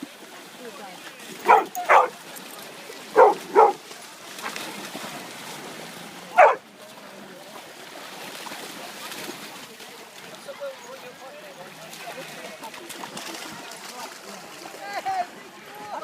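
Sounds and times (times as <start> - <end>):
dog barking: 1.4 - 2.2, 3.2 - 3.8, 6.4 - 6.6.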